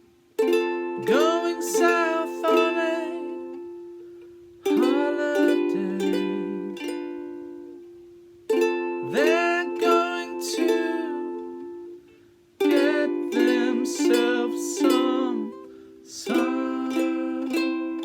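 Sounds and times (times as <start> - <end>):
ukulele strumming chords: 0.0 - 18.0
man singing: 0.8 - 3.6, 4.7 - 7.8, 9.0 - 11.6, 12.6 - 18.0.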